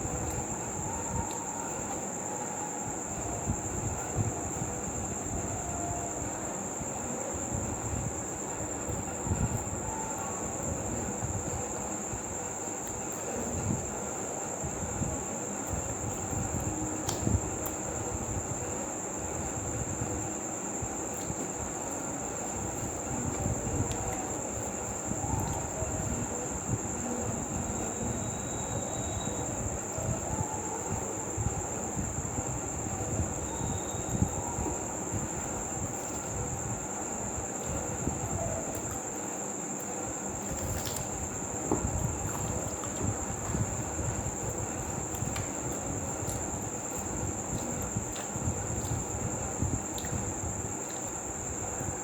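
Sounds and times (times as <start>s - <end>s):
steady high-pitched whine: 0.0s - 52.0s.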